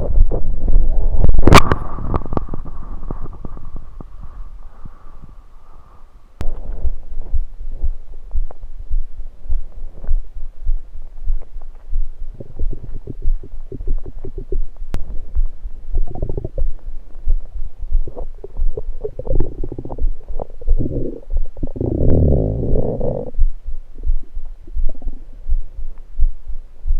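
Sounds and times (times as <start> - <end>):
stomach gurgling: 0.0 - 5.4, 11.3 - 26.0.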